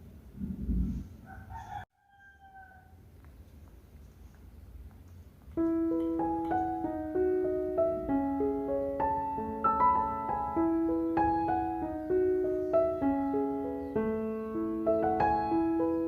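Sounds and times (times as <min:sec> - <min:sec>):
faint low rumble: 0:00.0 - 0:01.3
gentle piano melody: 0:05.4 - 0:16.0.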